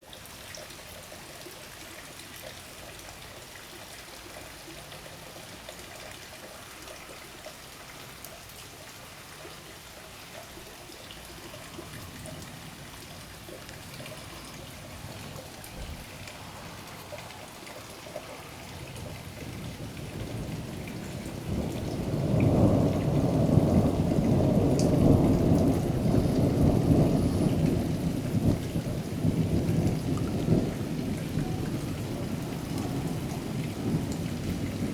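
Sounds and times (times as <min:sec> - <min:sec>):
steady rain falling: 0:00.0 - 0:34.9
low rumble of thunder: 0:11.6 - 0:34.9.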